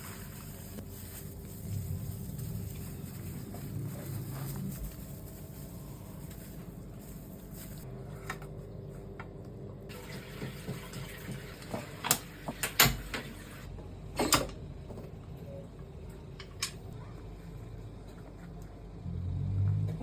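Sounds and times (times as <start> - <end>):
water running: 0.0 - 7.9, 9.9 - 13.7
low steady hum: 0.0 - 10.2.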